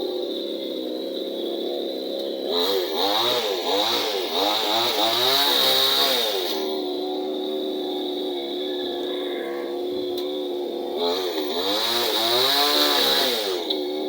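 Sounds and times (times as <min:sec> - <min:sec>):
chainsaw engine idling and revving: 0:00.1 - 0:14.0.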